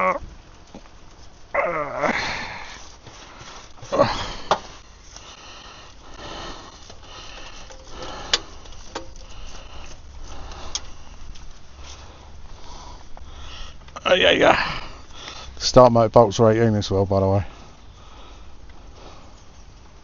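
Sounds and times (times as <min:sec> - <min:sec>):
steady rain hiss: 0:00.0 - 0:20.0
person sniffing and breathing: 0:02.1 - 0:13.9, 0:14.6 - 0:15.6, 0:17.5 - 0:19.7.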